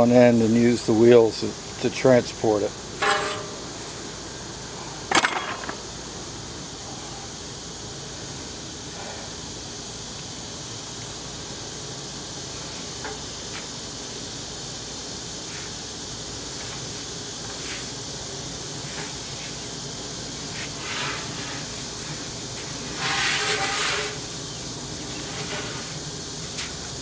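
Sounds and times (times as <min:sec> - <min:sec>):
steady background hiss: 0:00.0 - 0:27.0.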